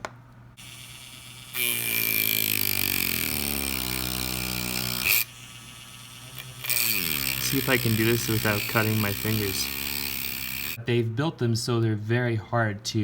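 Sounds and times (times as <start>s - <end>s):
small power tool cutting: 0.6s - 10.8s.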